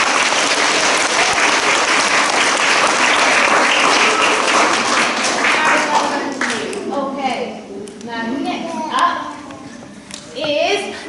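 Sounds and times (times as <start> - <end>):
children applauding: 0.0 - 6.8.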